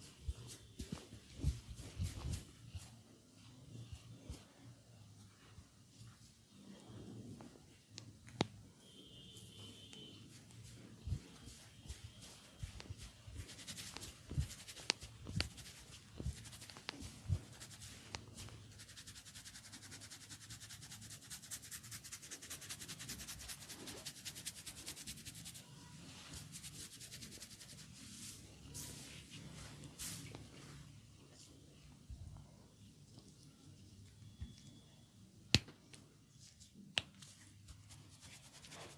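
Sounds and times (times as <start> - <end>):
hands rubbing skin: 10.4 - 25.6, 26.2 - 28.2, 37.0 - 38.9.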